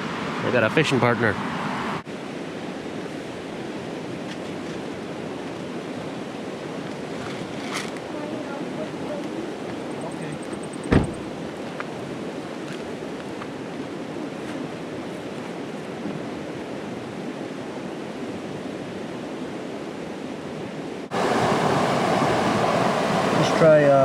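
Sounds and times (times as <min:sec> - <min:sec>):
rushing river water: 0:00.0 - 0:24.0.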